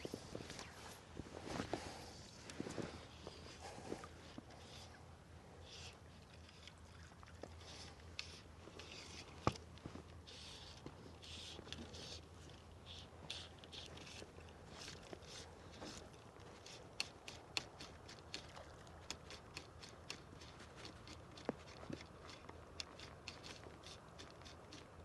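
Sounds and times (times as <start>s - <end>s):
fly line rasping through rod guides: 5.6s - 25.0s.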